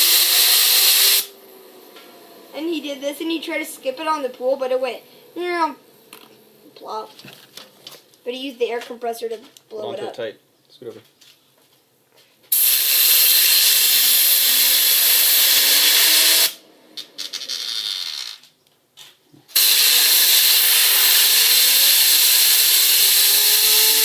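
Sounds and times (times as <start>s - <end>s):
compressed air hissing: 0.0s - 1.3s, 12.5s - 16.6s, 19.5s - 24.0s
fidget spinner whirring: 0.0s - 9.7s, 12.6s - 18.6s, 19.6s - 24.0s.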